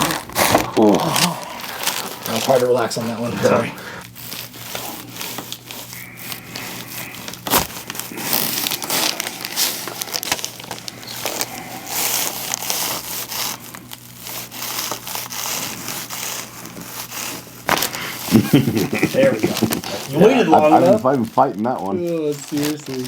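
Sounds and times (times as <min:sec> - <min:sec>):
rustling and crinkling: 0:00.0 - 0:23.0.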